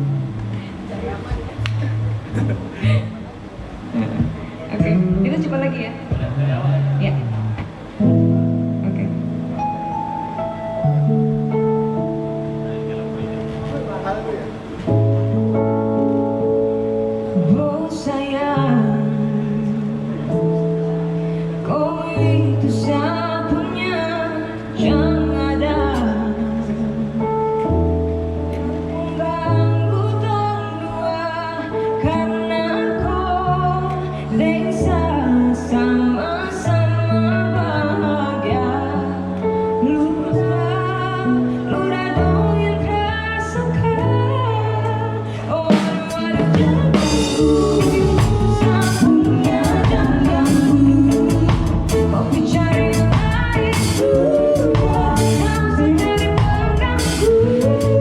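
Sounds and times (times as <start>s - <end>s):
live band playing: 0.0s - 58.0s
woman singing: 17.3s - 20.5s, 21.6s - 27.8s, 28.9s - 58.0s.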